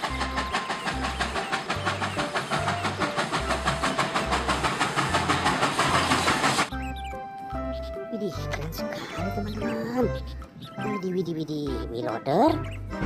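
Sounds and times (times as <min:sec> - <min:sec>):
steam hiss: 0:00.0 - 0:06.7
steam locomotive chuffing: 0:00.0 - 0:06.8.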